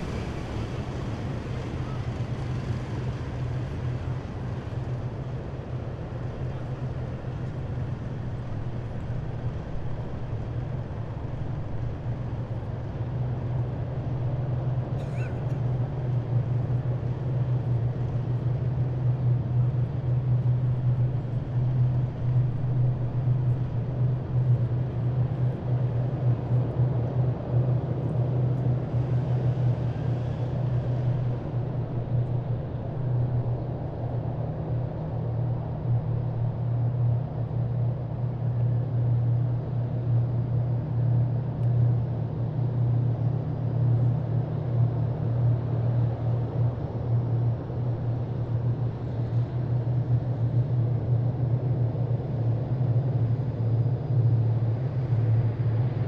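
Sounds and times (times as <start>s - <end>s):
road noise: 0.0s - 5.7s.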